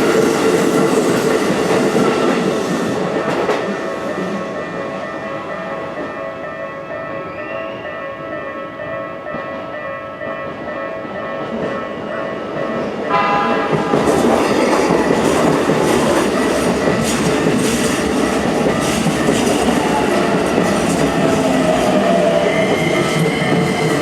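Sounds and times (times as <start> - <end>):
level crossing warning bell: 1.1 - 24.0
train wheels clacking over rail joints: 13.3 - 24.0.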